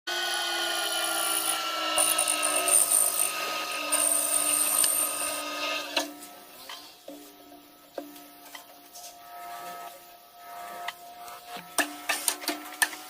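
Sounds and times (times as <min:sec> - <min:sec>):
power tool rasping cutting: 0:00.1 - 0:06.2.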